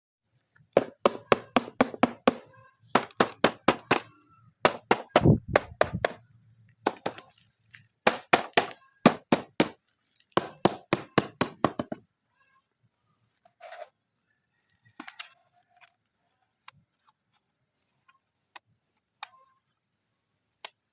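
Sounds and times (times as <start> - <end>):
hard objects clacking: 0.8 - 2.4, 3.0 - 4.0, 4.7 - 6.2, 6.9 - 7.2, 8.1 - 9.7, 10.4 - 12.0.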